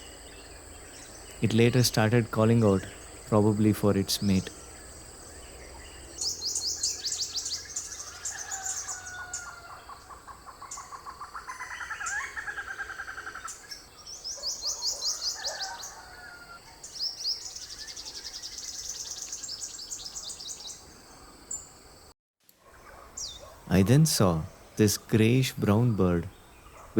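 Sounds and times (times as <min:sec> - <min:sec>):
another bird singing lower: 0:04.2 - 0:10.0.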